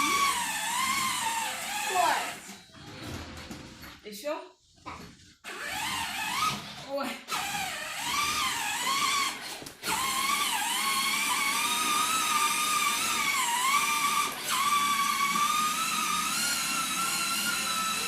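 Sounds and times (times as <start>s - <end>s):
small electric motor whining: 7.3s - 18.0s.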